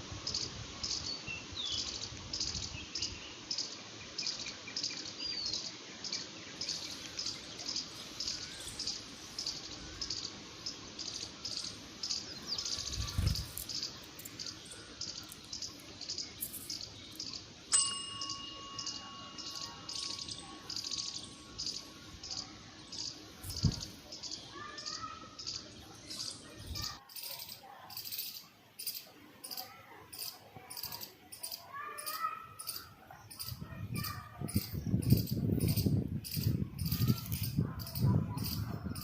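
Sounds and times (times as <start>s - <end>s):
squirrel chirping: 1.8s - 39.0s
bell-like ding: 17.7s - 21.8s.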